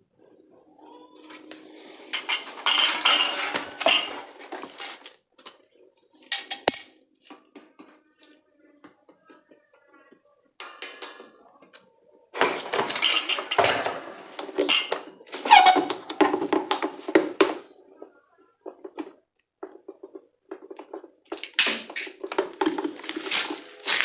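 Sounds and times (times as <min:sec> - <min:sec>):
rustling scraping and knocks: 0:01.3 - 0:05.2, 0:12.4 - 0:17.7, 0:18.7 - 0:24.0.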